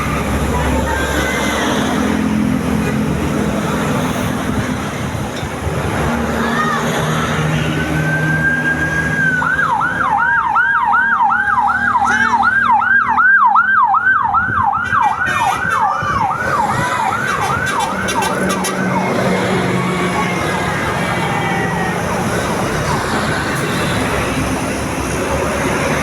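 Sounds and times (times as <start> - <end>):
bus horn whooping: 14.8 - 16.2, 17.3 - 22.8.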